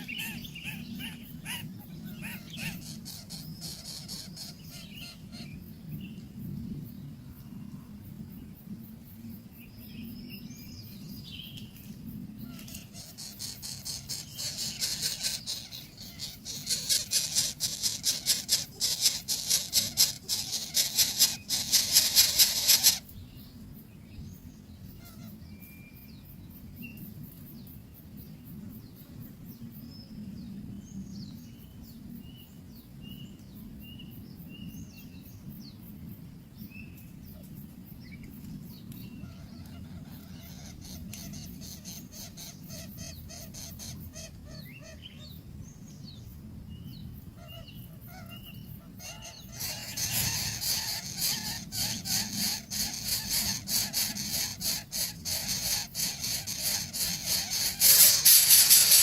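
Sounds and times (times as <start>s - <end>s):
high bird chirps: 12.7s - 23.0s, 49.2s - 59.0s
loud pulsing hiss: 13.2s - 23.1s, 49.7s - 59.0s.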